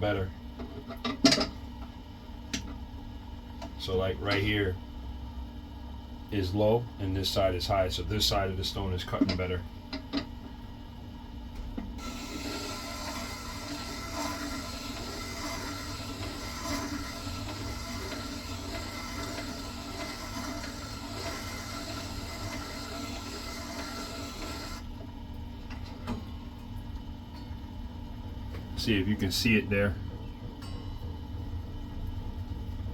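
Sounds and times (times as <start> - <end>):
chisel grinding on wet stone: 12.0 - 24.8
grindstone motor hum: 12.0 - 25.0.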